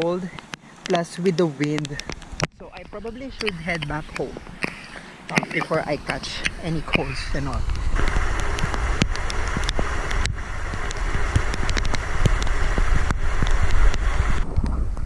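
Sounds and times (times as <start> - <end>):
sharp taps: 0.0 - 14.0
rain hiss: 0.0 - 15.0
wind buffeting microphone: 0.0 - 15.0.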